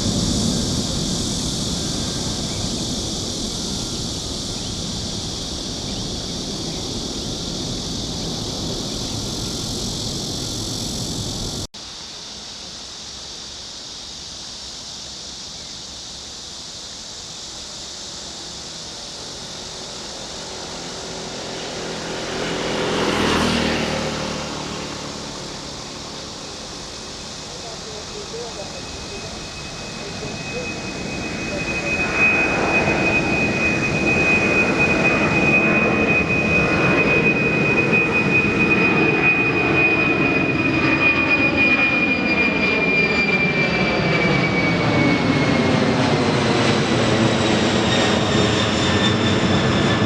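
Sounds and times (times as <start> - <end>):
jet airliner engine noise: 0.0 - 50.0
outdoor background noise: 0.0 - 50.0
vehicle passing close: 19.6 - 28.6.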